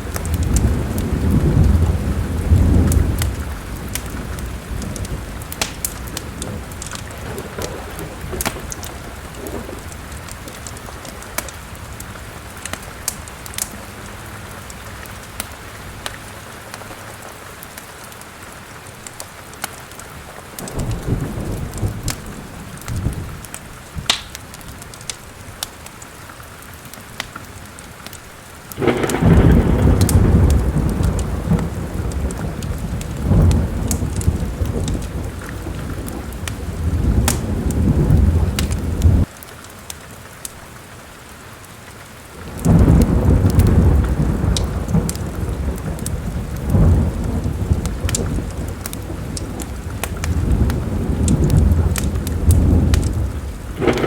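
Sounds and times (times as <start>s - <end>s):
thunder rumbling: 0.0s - 16.5s, 20.6s - 25.0s, 28.7s - 39.3s, 42.4s - 54.0s
steady rain: 0.0s - 54.0s
wood fire crackling: 0.0s - 54.0s.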